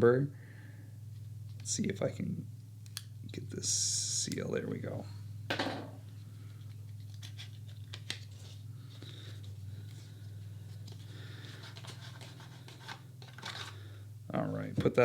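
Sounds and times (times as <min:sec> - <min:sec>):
steady low hum: 0:00.0 - 0:15.0
paper box rustling: 0:10.7 - 0:13.8.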